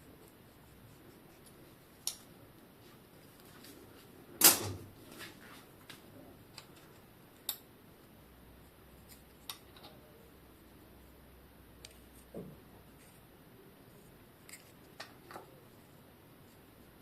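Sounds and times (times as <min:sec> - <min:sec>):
light clicks and taps of tools: 0:01.4 - 0:02.3, 0:05.9 - 0:07.7, 0:11.8 - 0:12.5.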